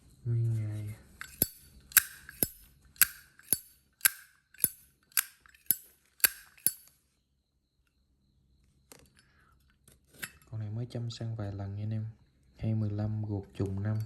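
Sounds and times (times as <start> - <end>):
lighter lid clicking open and shut: 1.2 - 6.8.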